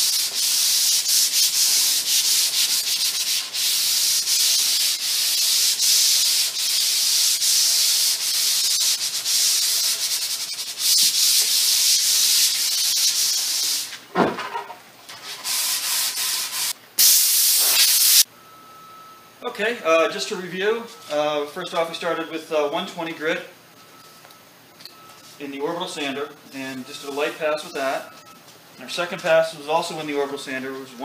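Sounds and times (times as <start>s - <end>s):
sandpaper rubbing on wood: 0.0s - 13.9s, 15.2s - 16.8s
short loud hiss: 17.0s - 18.3s.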